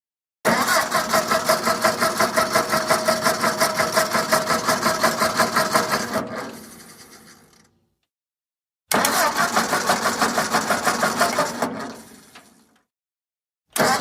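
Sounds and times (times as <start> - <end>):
car engine cranking: 0.5 - 2.4, 8.9 - 12.2, 13.8 - 14.0.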